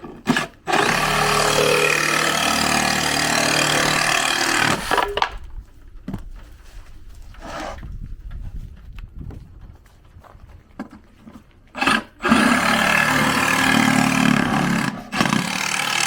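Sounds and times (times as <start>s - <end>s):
reciprocating saw cutting plywood: 0.0s - 5.2s, 11.7s - 16.0s.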